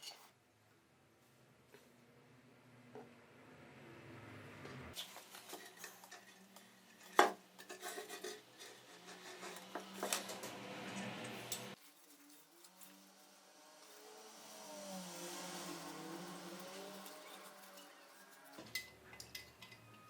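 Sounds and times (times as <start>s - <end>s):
metal tools clinking and knocking: 16.9s - 20.0s.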